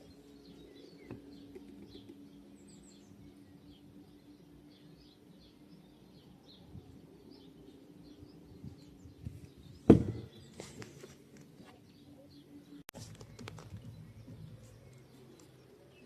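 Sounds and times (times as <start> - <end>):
faint low hum: 0.0 - 16.0
small bird chirping: 0.0 - 16.0
loud thump: 9.9 - 10.3.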